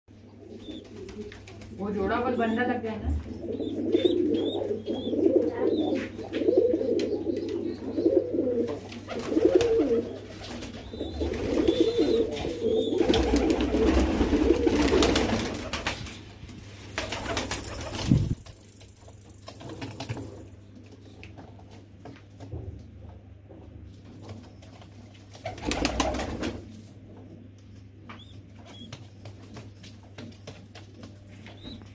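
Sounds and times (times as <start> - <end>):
pigeons cooing: 0.2 - 1.5, 3.2 - 15.4.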